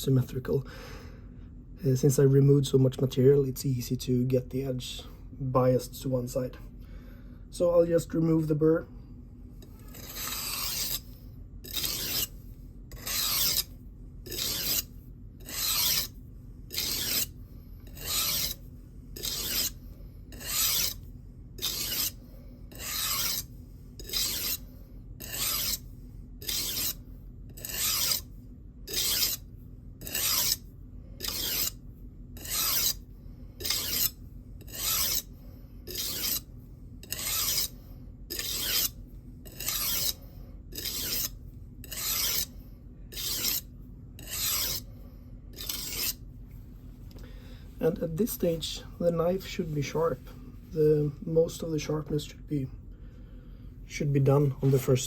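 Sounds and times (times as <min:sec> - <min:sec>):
knife scraping sharpening plate: 0:09.9 - 0:11.0, 0:11.6 - 0:12.3, 0:13.0 - 0:13.7, 0:14.3 - 0:16.1, 0:16.7 - 0:17.3, 0:18.0 - 0:18.6, 0:19.2 - 0:19.8, 0:20.4 - 0:21.0, 0:21.6 - 0:23.4, 0:24.0 - 0:24.6, 0:25.2 - 0:25.8, 0:26.4 - 0:27.0, 0:27.6 - 0:28.2, 0:28.9 - 0:29.4, 0:30.1 - 0:30.6, 0:31.2 - 0:31.7, 0:33.6 - 0:34.1, 0:34.7 - 0:35.3, 0:35.9 - 0:36.4, 0:37.0 - 0:37.7, 0:38.3 - 0:38.9, 0:39.6 - 0:42.5, 0:43.1 - 0:43.6, 0:44.2 - 0:44.8, 0:45.6 - 0:46.2.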